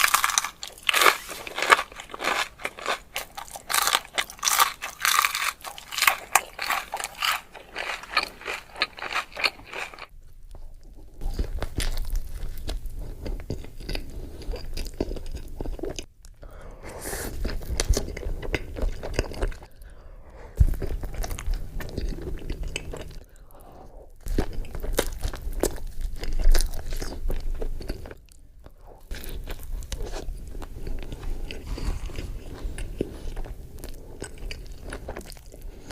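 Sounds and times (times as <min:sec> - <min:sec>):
crunchy bites: 0:00.0 - 0:10.1
chewing: 0:00.0 - 0:35.9.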